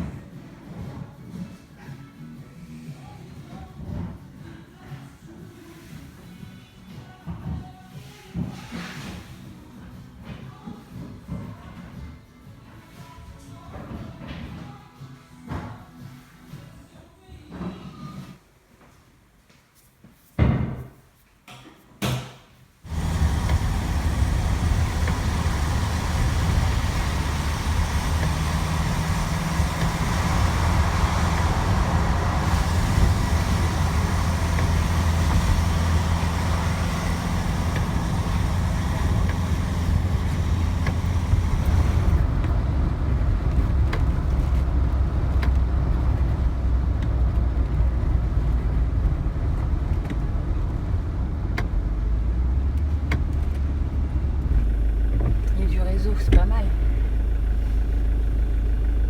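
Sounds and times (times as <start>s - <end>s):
car engine and tyre rumble: 22.8s - 59.0s.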